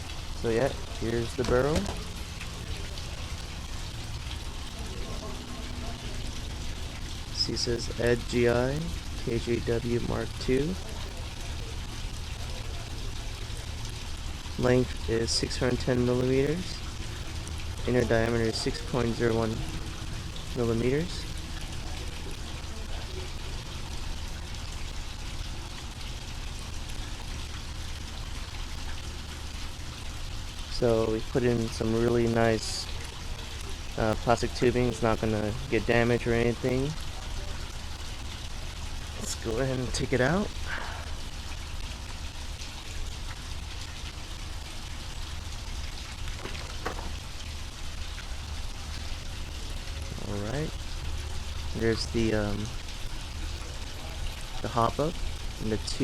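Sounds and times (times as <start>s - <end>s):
constant low hum: 0.0s - 56.0s
steady hiss: 0.0s - 56.0s
faint taps and plastic crinkles: 1.4s - 2.5s, 46.2s - 47.3s
faint crackle: 40.3s - 51.8s.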